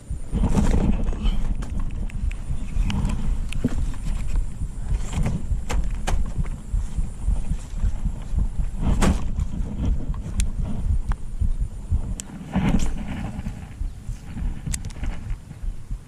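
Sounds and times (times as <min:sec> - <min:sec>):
wind buffeting microphone: 0:00.0 - 0:16.0
light clicks: 0:13.8 - 0:15.4.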